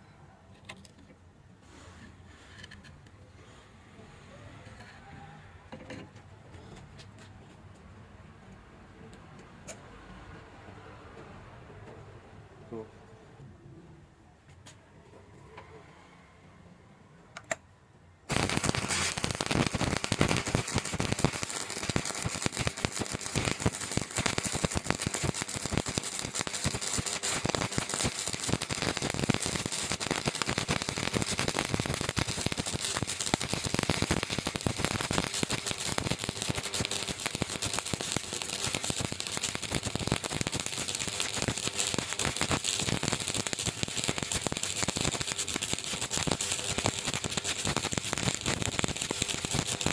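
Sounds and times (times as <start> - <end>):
welding arc crackling: 18.3 - 49.9.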